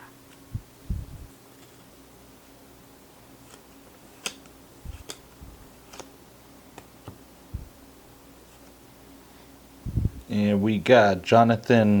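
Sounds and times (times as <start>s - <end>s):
trading cards flipped through: 3.4s - 6.1s.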